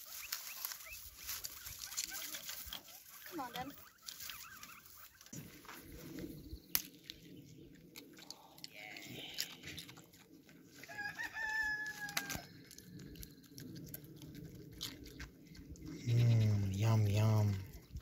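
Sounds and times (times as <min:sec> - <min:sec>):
rooster crowing: 0:10.8 - 0:12.6.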